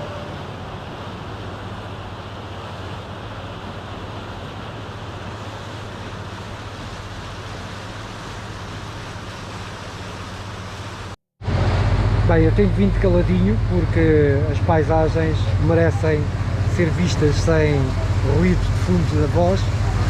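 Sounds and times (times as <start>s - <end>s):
boat engine drone: 0.0s - 20.0s
wind and water rushing: 0.0s - 20.0s.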